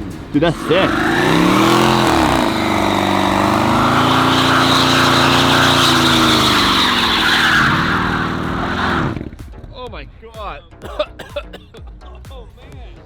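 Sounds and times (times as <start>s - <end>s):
tyres spinning hiss: 0.0s - 9.2s
car engine revving hard: 0.0s - 9.4s.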